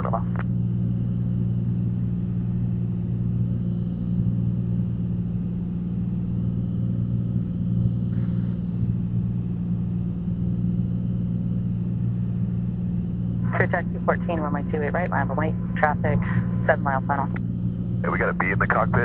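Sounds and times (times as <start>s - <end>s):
airplane engine droning in flight: 0.0s - 19.0s.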